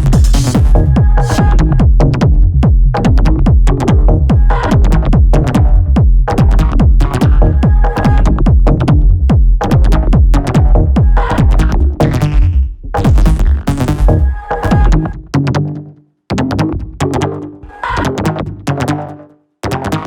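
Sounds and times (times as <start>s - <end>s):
techno music with kick drum: 0.0s - 15.4s.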